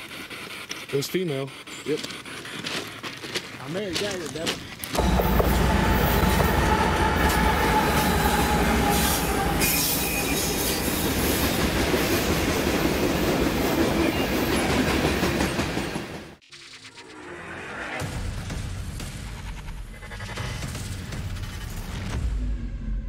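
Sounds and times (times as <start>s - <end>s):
train wheels rumbling on rails: 3.6s - 16.4s
wheels squealing: 4.4s - 11.6s.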